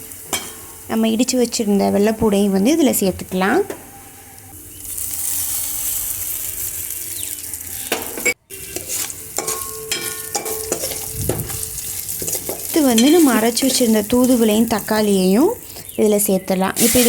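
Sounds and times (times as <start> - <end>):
spices sizzling in hot oil: 0.0 - 17.0
spoon scraping and clinking pan: 7.9 - 13.8.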